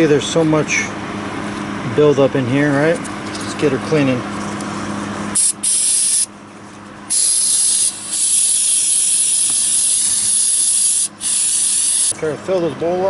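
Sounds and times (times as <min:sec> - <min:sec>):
aerosol spray hissing: 0:05.4 - 0:06.3, 0:07.1 - 0:12.1.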